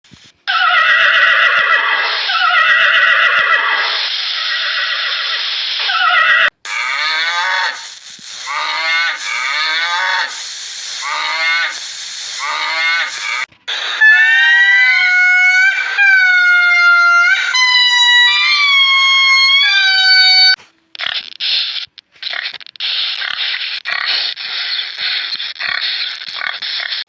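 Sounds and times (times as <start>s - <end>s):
horse whinnying: 0.5s - 11.8s.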